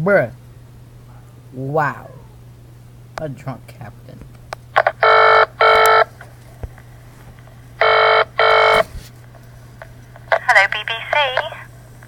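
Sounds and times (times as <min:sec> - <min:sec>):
telephone ringing: 0:04.9 - 0:06.1, 0:07.8 - 0:08.8.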